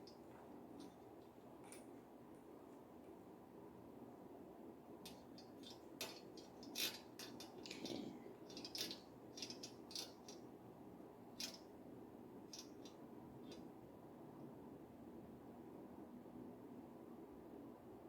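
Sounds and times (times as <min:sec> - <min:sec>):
faint room hum: 0:00.0 - 0:18.0
plastic parts clicking and rattling: 0:05.1 - 0:10.4.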